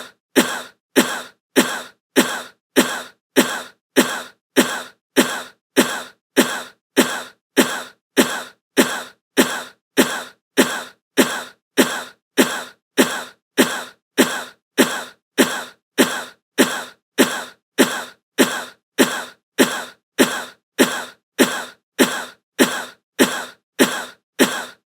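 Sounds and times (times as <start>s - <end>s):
short sharp bursts: 7.6s - 24.8s.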